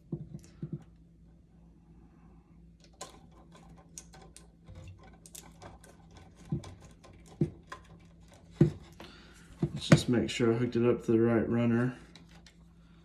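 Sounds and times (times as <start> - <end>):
hands working electrical wires: 2.8 - 10.2.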